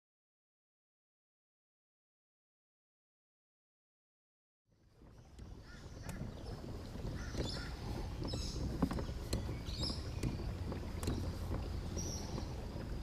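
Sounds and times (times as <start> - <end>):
paddle splashes: 4.7 - 13.0
wind buffeting microphone: 4.7 - 13.0
birds chirping: 5.0 - 13.0.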